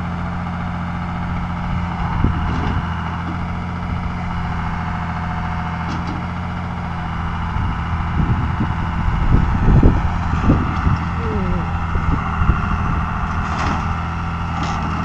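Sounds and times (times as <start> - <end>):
machine engine running: 0.0 - 15.0.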